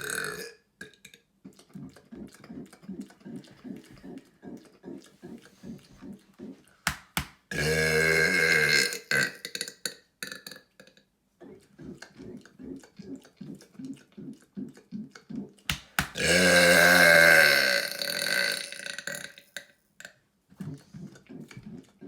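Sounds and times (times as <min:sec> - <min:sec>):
man burping: 0:00.0 - 0:00.6, 0:07.5 - 0:10.9, 0:16.2 - 0:19.6
rhythmic throat sounds: 0:00.0 - 0:22.0.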